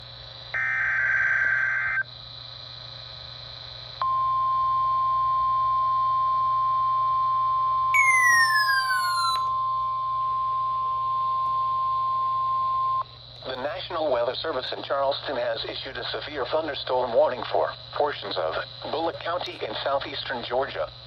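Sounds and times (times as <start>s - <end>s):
steady alarm tone: 0.6s - 2.0s, 8.0s - 11.0s
falling whistle: 7.9s - 13.0s
harsh digital warble: 8.0s - 9.5s.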